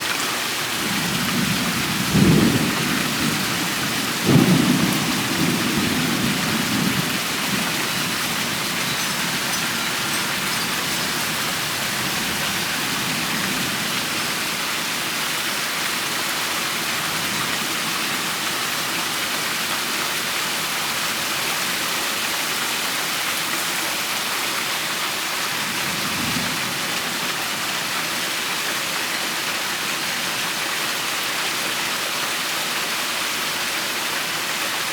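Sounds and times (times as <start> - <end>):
steady rain falling: 0.0 - 34.9
thunder claps: 0.8 - 14.4.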